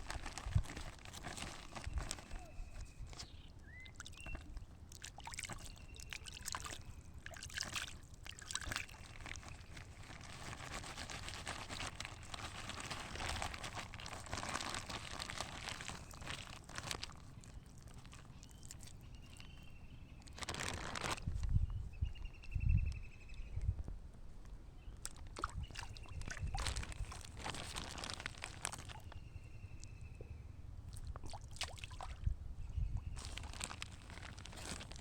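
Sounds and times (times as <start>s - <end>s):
pond water splashing: 0.0s - 19.4s, 25.0s - 29.1s, 30.8s - 32.3s.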